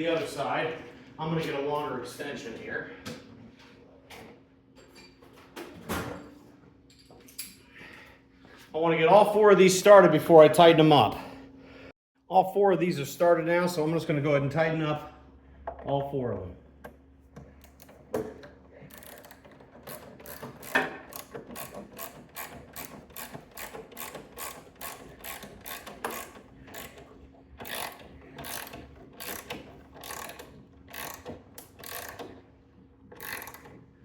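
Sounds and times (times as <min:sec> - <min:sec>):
socket ratchet clicking: 0:18.9 - 0:32.3, 0:33.2 - 0:33.7.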